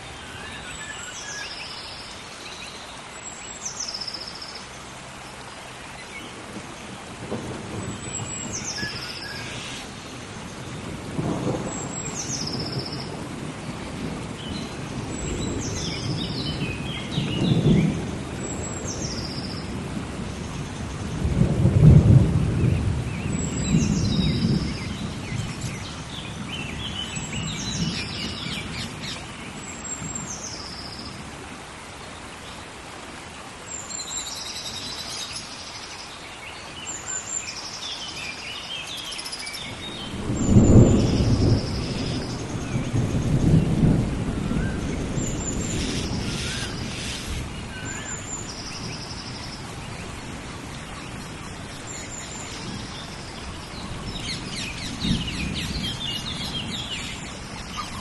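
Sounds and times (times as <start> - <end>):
heavy rain: 0.0 - 58.0
rolling thunder: 6.4 - 29.2, 39.7 - 47.9, 48.5 - 58.0.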